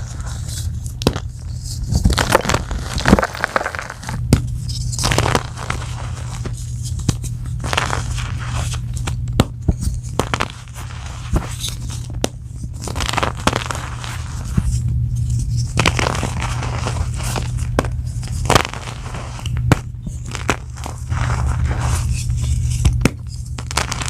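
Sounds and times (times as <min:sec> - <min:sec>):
chalk blocks crunching: 0:00.0 - 0:04.2
steady low hum: 0:00.0 - 0:24.0.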